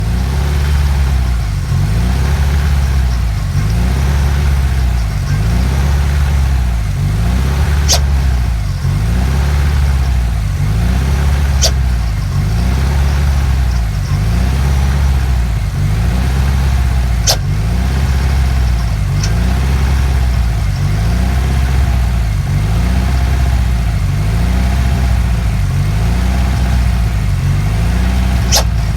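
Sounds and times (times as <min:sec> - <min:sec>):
car engine droning: 0:00.0 - 0:28.9
turbo screeching: 0:02.1 - 0:22.1, 0:28.4 - 0:28.9
sharp clicks: 0:07.7 - 0:08.4, 0:11.1 - 0:14.2, 0:17.2 - 0:17.6, 0:28.5 - 0:28.9.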